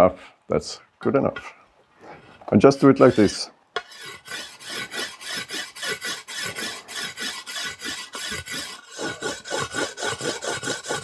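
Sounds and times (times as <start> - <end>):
whetstone honing steel blade: 2.8 - 11.0.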